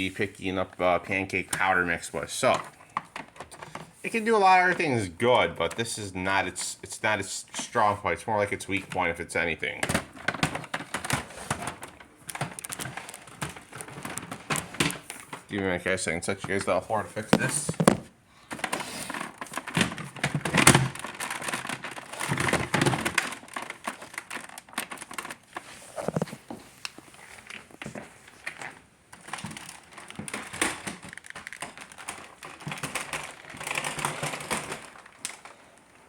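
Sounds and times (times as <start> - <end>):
clicking and knocking: 9.8 - 15.5, 17.3 - 26.5.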